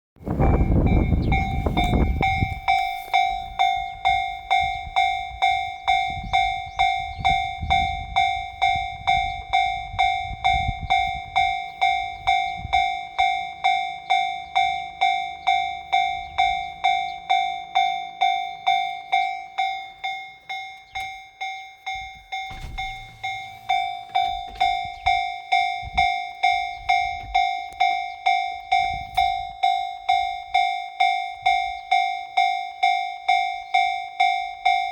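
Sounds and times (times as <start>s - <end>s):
level crossing bell dinging: 0.4s - 34.9s.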